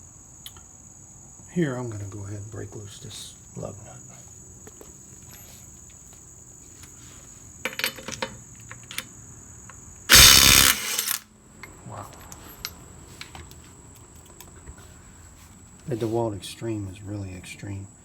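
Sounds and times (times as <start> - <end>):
crickets chirring: 0.0 - 18.0
impact wrench hammering: 10.1 - 11.2.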